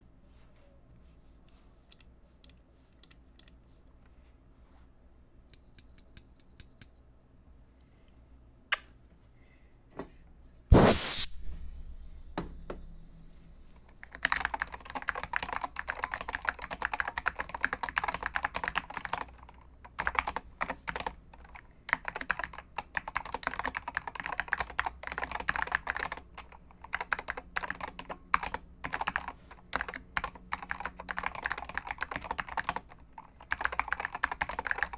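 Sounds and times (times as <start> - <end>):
loud thump: 10.7 - 13.8
keyboard typing: 13.9 - 34.9.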